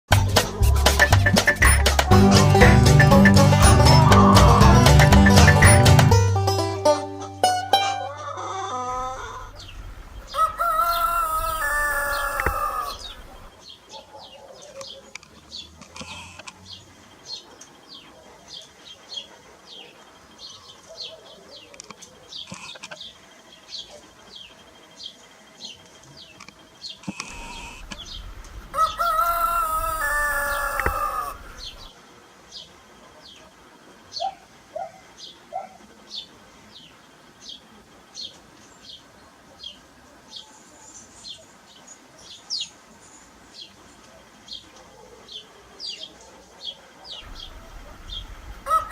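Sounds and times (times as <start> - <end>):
rooster crowing: 3.6 - 5.2, 7.8 - 13.5, 28.6 - 31.9, 48.6 - 48.9
small birds chirping: 8.9 - 48.9.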